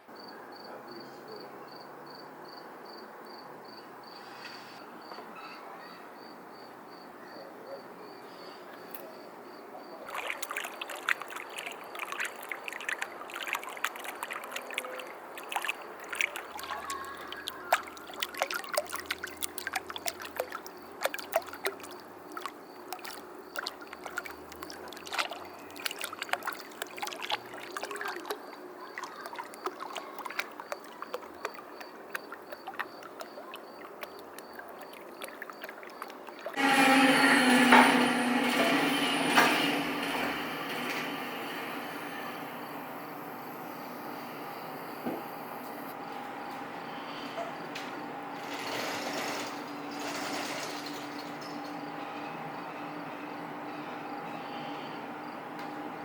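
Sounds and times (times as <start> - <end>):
insect chirping: 6.2 - 37.5, 41.8 - 45.9, 54.2 - 55.4.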